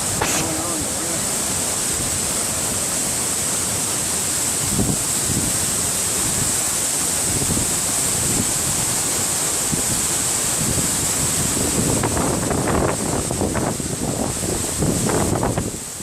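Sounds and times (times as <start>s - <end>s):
waterfall rushing: 0.0s - 16.0s
wind bumps on microphone: 10.6s - 15.9s.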